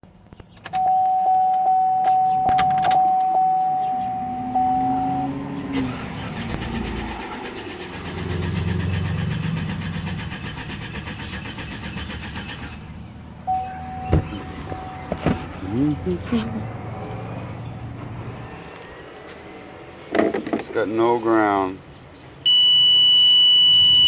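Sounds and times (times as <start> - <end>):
vehicle warning chime: 0.6 - 5.6, 13.5 - 16.7, 22.5 - 24.0
engine cranking on starter: 5.7 - 15.0.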